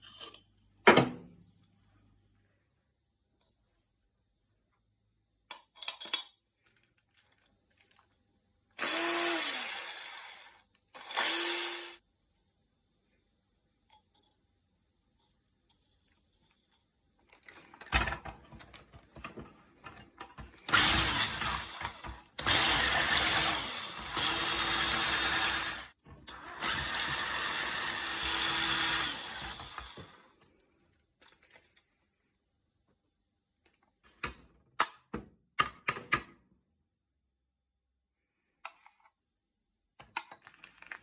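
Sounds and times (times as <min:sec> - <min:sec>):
electric drill grating radish: 0:08.8 - 0:12.0, 0:20.7 - 0:30.2
knocks and handling noise: 0:15.7 - 0:20.7.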